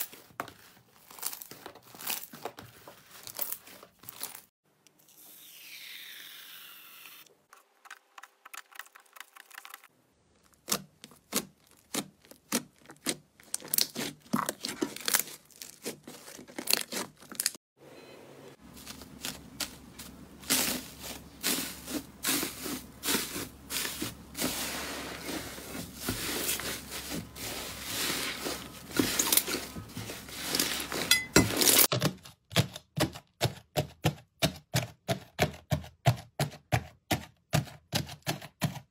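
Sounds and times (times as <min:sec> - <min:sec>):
hands squeezing slime: 0:08.3 - 0:17.6.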